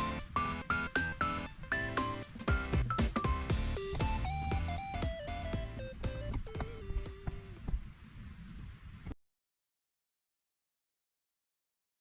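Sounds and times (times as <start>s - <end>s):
low regular beat: 0.0s - 7.8s.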